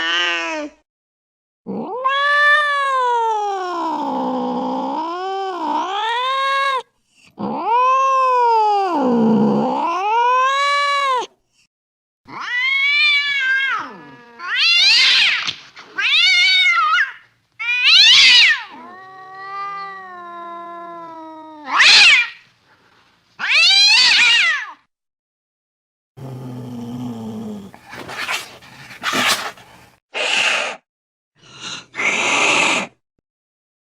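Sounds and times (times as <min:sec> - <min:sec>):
cat yowling: 0:01.7 - 0:06.8, 0:07.4 - 0:11.3, 0:12.3 - 0:22.4, 0:23.4 - 0:24.8
cat shrieking: 0:01.8 - 0:03.3, 0:12.3 - 0:22.4, 0:23.4 - 0:24.8.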